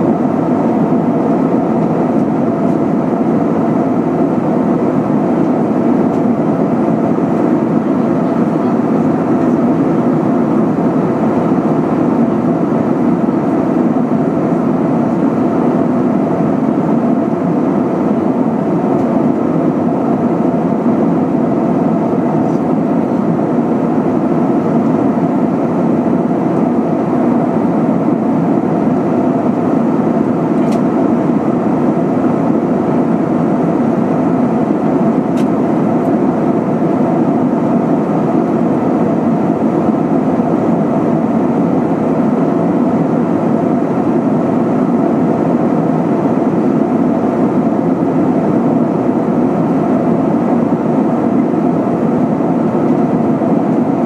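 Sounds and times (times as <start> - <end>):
airplane cabin engine hum: 0.0 - 54.0.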